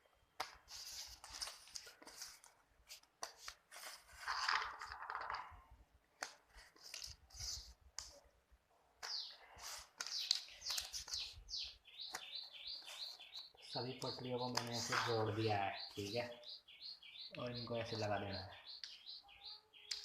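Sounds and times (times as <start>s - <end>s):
small birds chirping: 6.2s - 8.3s, 9.0s - 20.0s.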